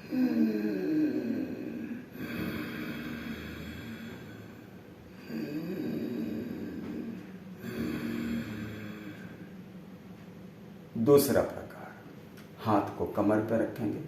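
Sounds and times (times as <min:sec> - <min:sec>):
rasping throat breathing: 0:00.0 - 0:09.5.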